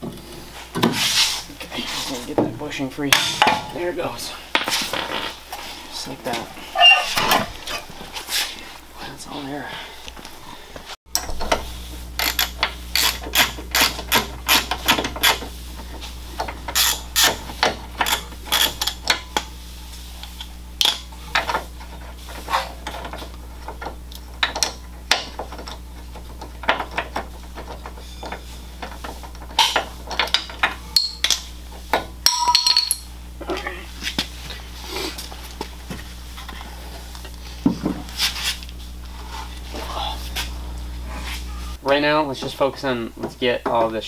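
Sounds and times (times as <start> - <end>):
steady low hum: 0.0 - 44.0
hand tools clanking on metal: 2.4 - 4.1, 20.8 - 31.4, 32.2 - 33.6.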